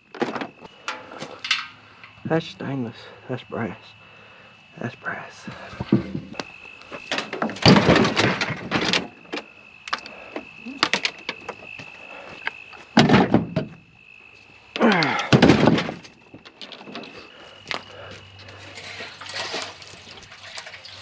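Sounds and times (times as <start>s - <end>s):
scrap metal clanking: 0.2s - 2.2s.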